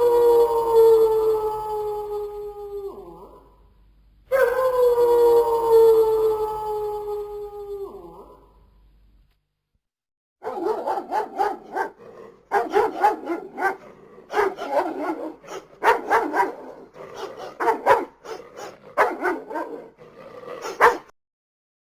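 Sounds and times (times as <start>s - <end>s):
dog barking: 10.4s - 20.0s, 20.6s - 21.1s.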